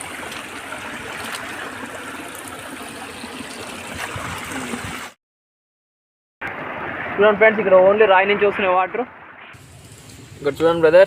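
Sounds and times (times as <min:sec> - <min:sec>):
stream rushing over rocks: 0:00.0 - 0:05.2.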